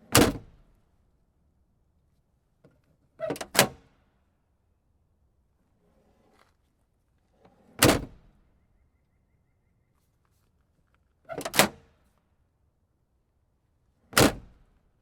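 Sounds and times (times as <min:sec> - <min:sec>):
faint handling noise: 0:09.9 - 0:11.2.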